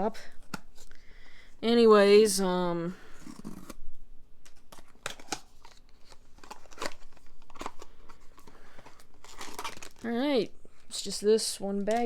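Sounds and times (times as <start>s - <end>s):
cardboard packaging being opened: 3.1s - 3.8s, 4.6s - 10.2s.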